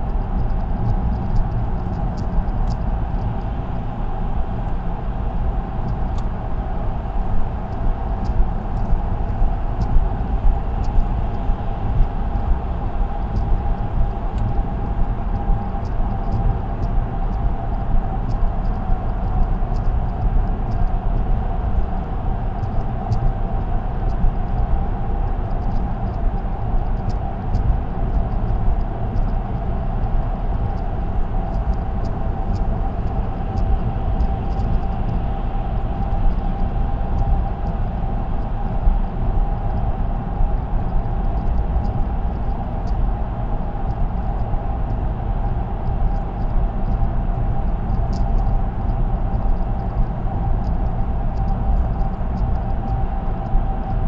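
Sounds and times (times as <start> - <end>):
steady hum: 0.0 - 54.0
faint ticks: 0.1 - 3.5, 18.3 - 21.6, 22.6 - 24.7, 25.5 - 26.2, 26.8 - 38.6, 43.8 - 54.0.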